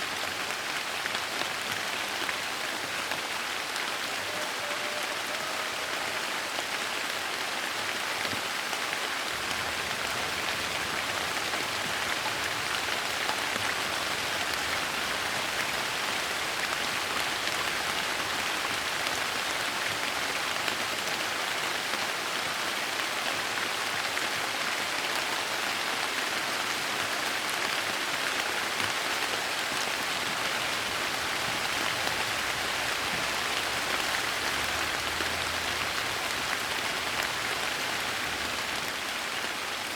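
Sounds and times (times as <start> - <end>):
soft rain falling: 0.0 - 39.9.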